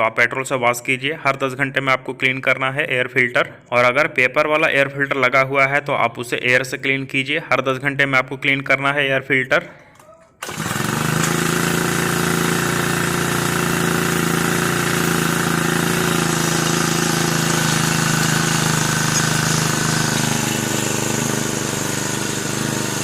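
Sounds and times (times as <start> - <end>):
brush cutter engine running: 10.4 - 23.0.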